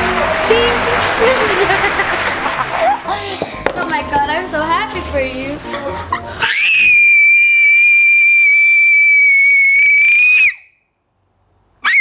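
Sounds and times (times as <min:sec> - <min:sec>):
girl screaming: 0:06.4 - 0:10.6.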